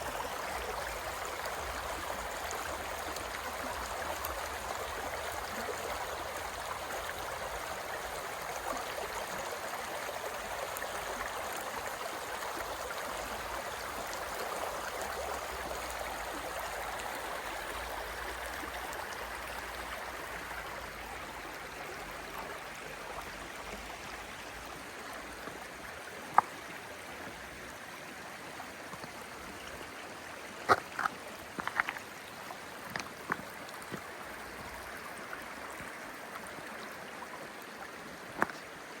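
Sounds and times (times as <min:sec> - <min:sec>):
stream running: 0:00.0 - 0:39.0.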